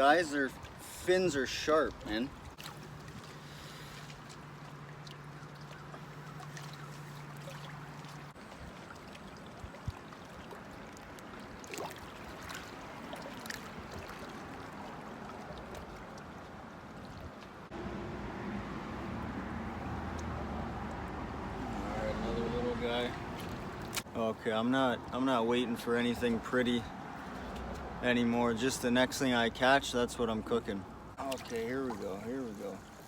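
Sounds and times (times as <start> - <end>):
water lapping at shore: 0.0 - 17.8, 19.0 - 25.3, 30.6 - 33.0
small clicks and splashes: 1.9 - 17.7, 20.0 - 21.1, 23.1 - 24.1, 31.2 - 33.0.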